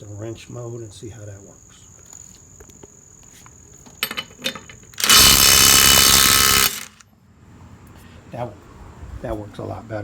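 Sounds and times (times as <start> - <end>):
impact wrench hammering: 4.0 - 7.0.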